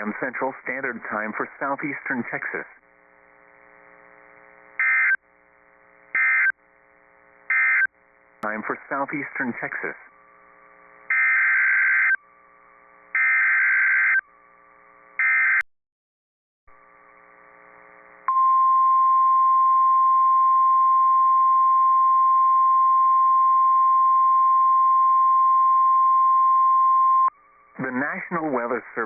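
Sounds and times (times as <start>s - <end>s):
buzzing digital data bursts: 4.8s - 5.2s, 6.1s - 6.6s, 7.5s - 8.0s, 11.1s - 12.2s, 13.1s - 14.2s, 15.2s - 15.6s
steady alarm tone: 4.8s - 5.2s, 6.2s - 6.6s, 7.5s - 7.9s, 11.1s - 12.2s, 13.1s - 14.2s, 15.2s - 15.6s.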